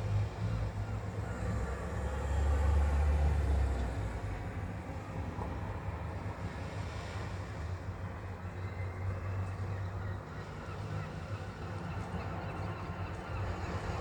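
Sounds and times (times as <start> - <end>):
low hum of traffic: 0.0 - 7.0.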